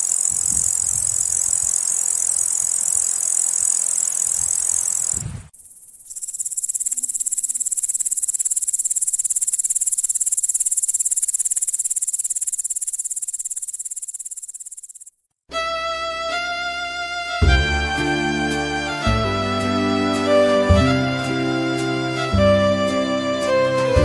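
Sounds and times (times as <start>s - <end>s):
insect high-pitched shrill: 0.0s - 15.1s
insect song of rapid pulses: 0.0s - 15.2s.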